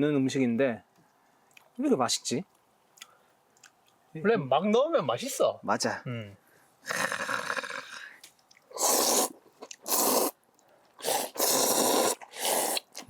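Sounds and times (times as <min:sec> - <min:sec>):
noodles being slurped: 0:08.5 - 0:10.4, 0:11.0 - 0:13.0.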